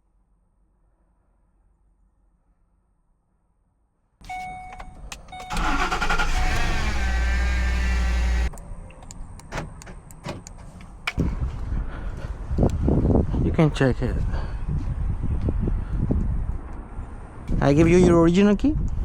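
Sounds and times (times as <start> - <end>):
car engine starting and idling: 4.3 - 11.2.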